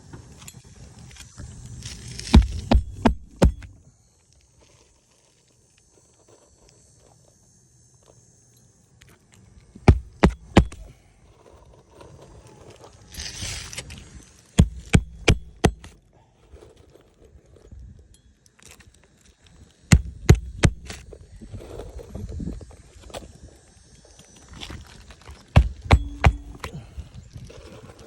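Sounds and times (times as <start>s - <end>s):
shingle scraping rustle: 0.2s - 8.3s, 9.0s - 28.0s
hammer striking nails: 2.2s - 3.8s, 9.8s - 10.9s, 14.6s - 16.0s, 19.9s - 21.0s, 25.5s - 26.8s.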